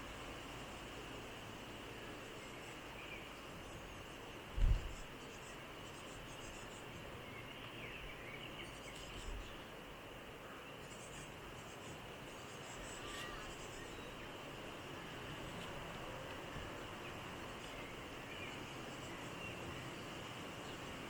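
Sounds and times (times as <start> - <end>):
steady hiss: 0.0 - 21.0
insect chirring: 10.8 - 14.8.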